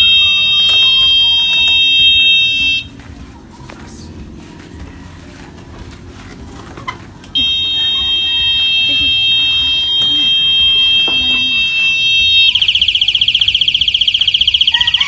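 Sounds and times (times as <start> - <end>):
alarm buzzer high-pitched tone: 0.0 - 2.9, 7.4 - 15.0.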